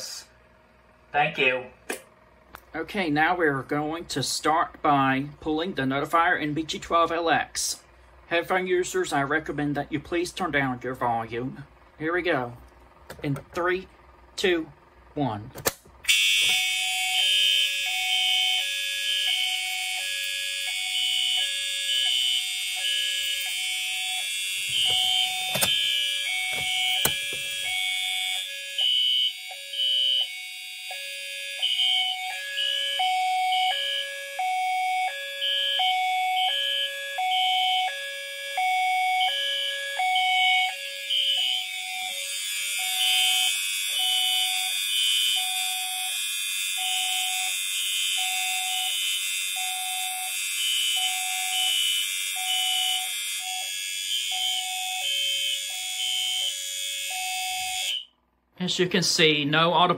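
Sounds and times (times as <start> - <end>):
buzzy fire alarm horn: 16.0 - 58.2.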